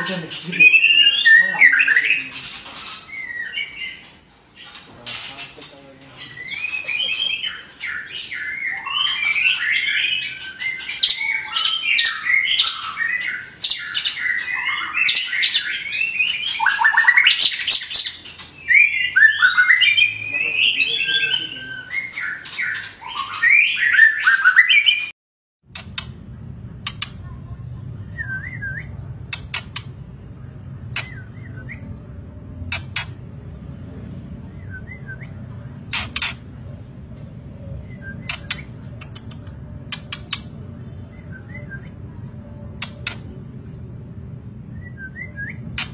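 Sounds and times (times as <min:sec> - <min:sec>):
low steady hum: 0:25.7 - 0:45.9
sharp clicks: 0:38.2 - 0:40.5.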